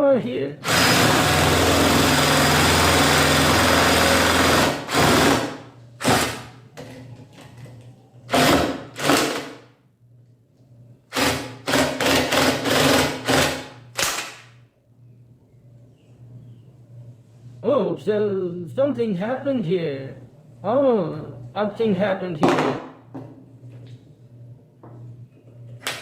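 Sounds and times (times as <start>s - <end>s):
jigsaw blade cutting wood: 0.6s - 6.5s, 8.3s - 9.6s, 11.1s - 14.4s.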